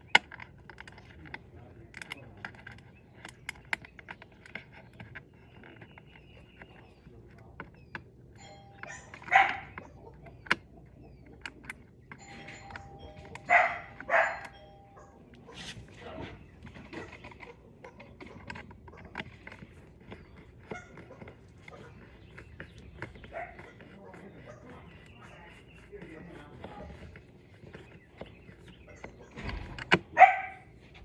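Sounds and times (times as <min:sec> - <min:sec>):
doorbell chime: 0:08.4 - 0:09.0, 0:12.2 - 0:15.3
dog barking: 0:08.8 - 0:10.3, 0:13.4 - 0:15.8, 0:20.6 - 0:22.4, 0:23.1 - 0:25.4, 0:28.9 - 0:29.5, 0:30.1 - 0:30.7.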